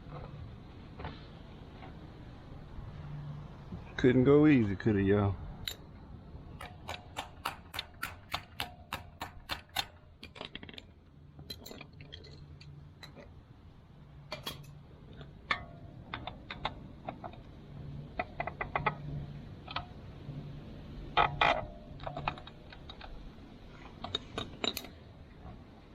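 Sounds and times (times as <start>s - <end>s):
hand tools clicking: 6.6s - 10.9s.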